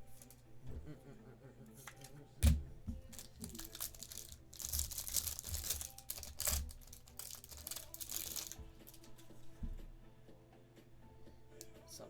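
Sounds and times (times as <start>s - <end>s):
foil wrapper crinkling and tearing: 0.0s - 0.4s, 3.0s - 9.2s.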